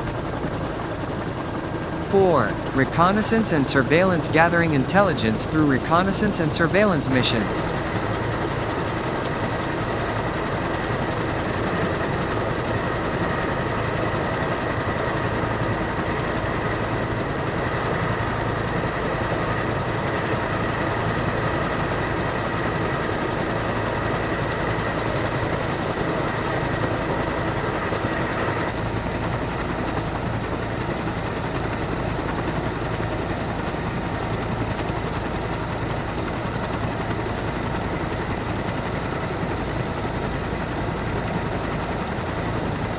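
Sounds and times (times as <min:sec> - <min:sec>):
jet engine whining: 0:00.0 - 0:29.4.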